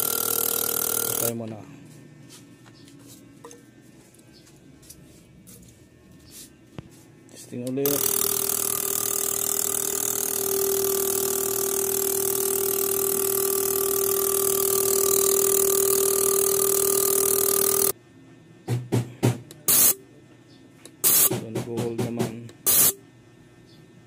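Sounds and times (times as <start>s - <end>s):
pump motor whining: 0.0s - 1.5s, 7.7s - 18.0s.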